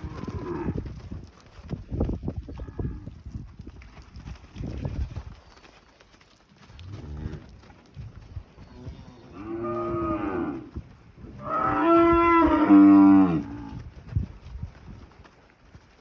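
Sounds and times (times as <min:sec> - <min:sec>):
cattle mooing: 0:11.4 - 0:13.8.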